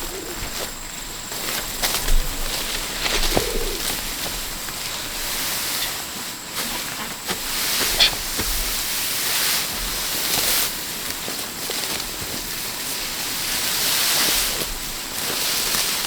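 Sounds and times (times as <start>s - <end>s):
bird cooing: 0.0s - 6.0s, 7.8s - 8.3s
steady hiss: 0.0s - 16.0s.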